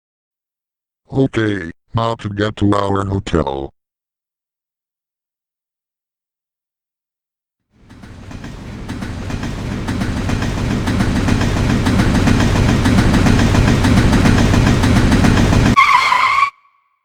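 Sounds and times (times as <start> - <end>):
train rumble and wheel clatter: 7.8 - 15.9.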